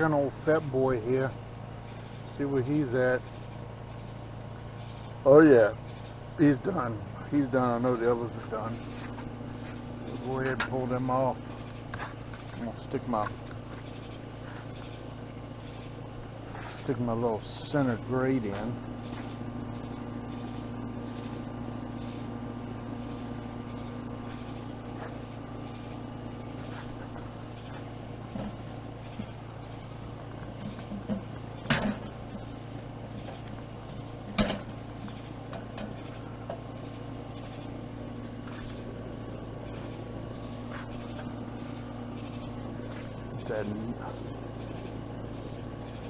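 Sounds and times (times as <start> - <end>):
insects chirring: 0.0 - 46.0
low hum: 0.0 - 46.0
knocks and clicks at grill: 30.4 - 32.4, 34.3 - 36.7.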